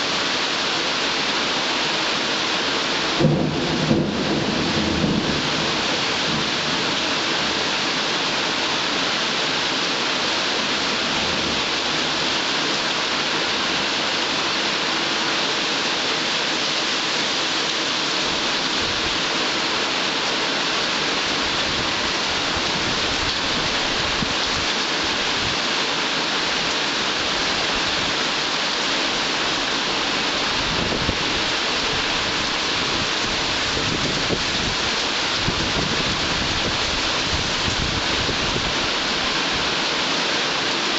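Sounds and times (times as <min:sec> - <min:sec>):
heavy rain falling: 0:00.0 - 0:40.9
faint thunder rumble: 0:03.2 - 0:06.7.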